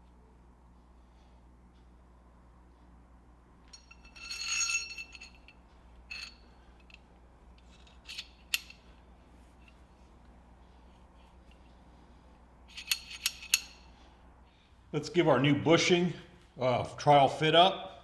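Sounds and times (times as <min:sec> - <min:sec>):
faint steady hum: 0:00.0 - 0:18.0
metal parts clinking: 0:03.8 - 0:07.0, 0:07.6 - 0:08.9, 0:12.7 - 0:13.9.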